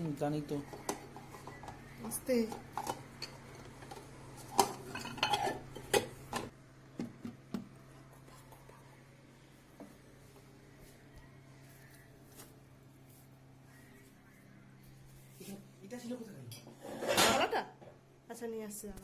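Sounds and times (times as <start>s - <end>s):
dish and utensils clattering: 2.4s - 6.5s, 16.8s - 17.6s.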